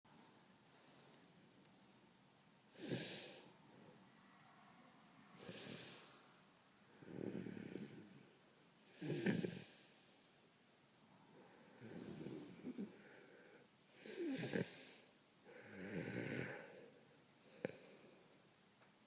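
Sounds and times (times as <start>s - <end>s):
man snoring: 2.8s - 3.4s, 7.0s - 8.2s, 8.9s - 9.8s, 14.0s - 16.8s.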